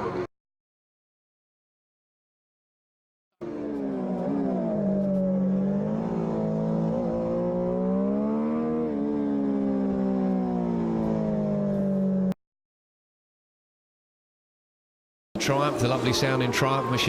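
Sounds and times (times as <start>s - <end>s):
motorcycle engine at high revs: 3.4s - 12.4s.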